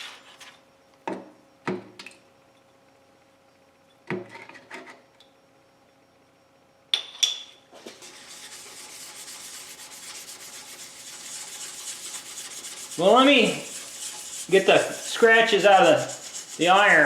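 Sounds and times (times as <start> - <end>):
stone rubbing on cast iron: 7.9 - 17.0.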